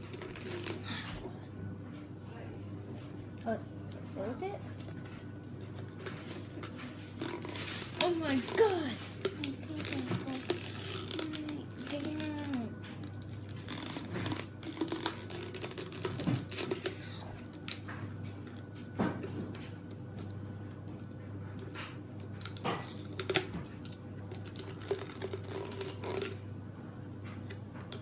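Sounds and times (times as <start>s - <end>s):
steady low hum: 0.0s - 28.0s
toy packaging crinkling: 7.2s - 12.7s.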